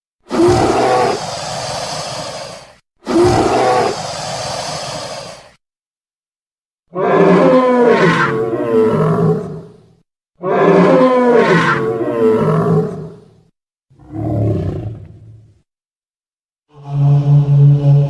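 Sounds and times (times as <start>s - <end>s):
dinosaur roar: 0.3s - 5.5s, 6.9s - 9.8s, 10.4s - 13.2s, 14.0s - 15.5s, 16.7s - 18.0s.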